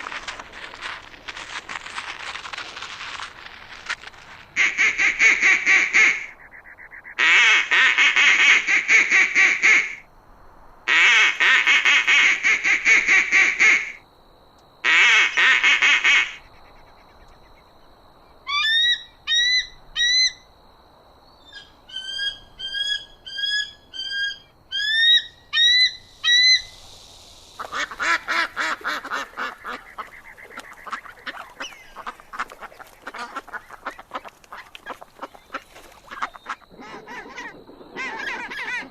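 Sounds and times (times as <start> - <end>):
waterfowl honking: 4.6 - 10.0, 10.9 - 14.0, 14.8 - 17.3, 27.6 - 38.9
short rising chirps: 23.1 - 30.4.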